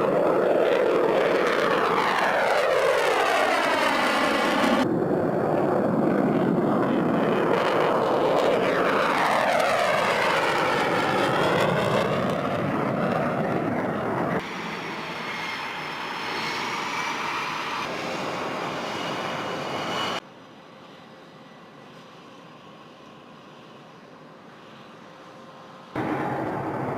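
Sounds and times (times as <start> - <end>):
distant jet hum: 0.0 - 20.2, 25.9 - 26.9
fighter jets taking off: 0.0 - 20.2, 25.9 - 26.9.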